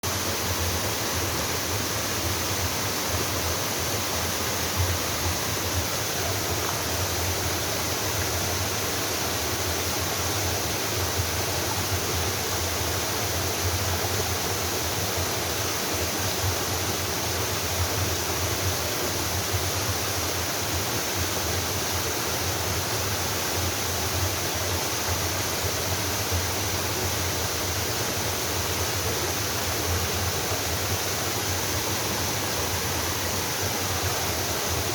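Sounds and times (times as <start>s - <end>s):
waterfall rushing: 24.3s - 34.9s.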